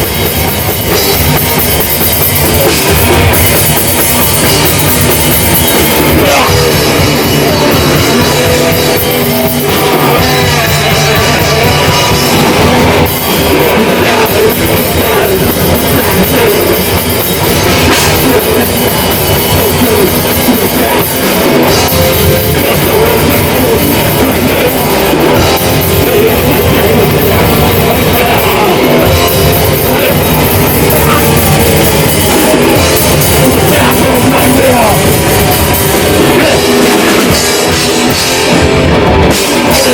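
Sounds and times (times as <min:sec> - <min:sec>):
distorted guitars: 0:00.0 - 0:39.9
drum kit: 0:00.0 - 0:39.9.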